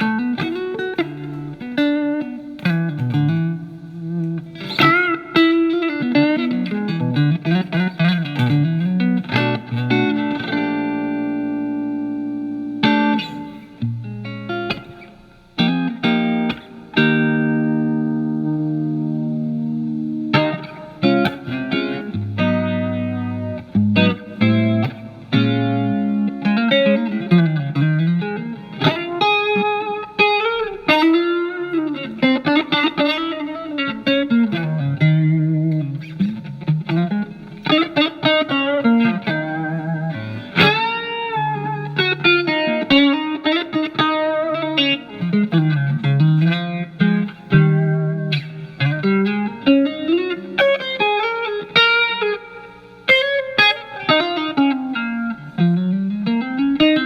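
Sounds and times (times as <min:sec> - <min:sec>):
electric guitar with chorus effect: 0:00.0 - 0:57.0.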